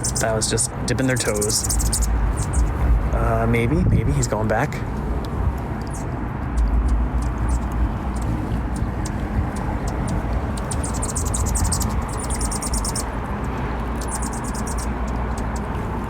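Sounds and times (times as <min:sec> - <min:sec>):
sharp bird chip notes: 0:00.0 - 0:02.9, 0:05.8 - 0:13.1, 0:13.8 - 0:15.7
hummingbirds twittering: 0:00.0 - 0:16.0
steady low rumble: 0:00.0 - 0:16.0.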